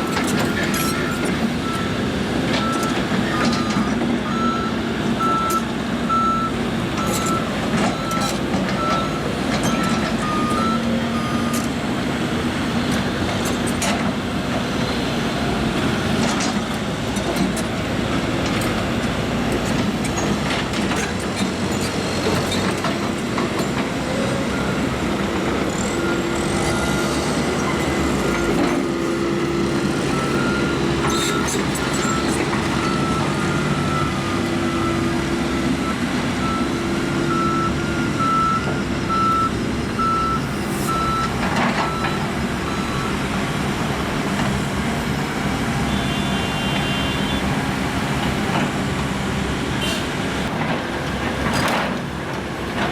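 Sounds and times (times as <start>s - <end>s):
diesel engine running under load: 0.0s - 52.9s
backup alarm beeping: 30.0s - 41.3s.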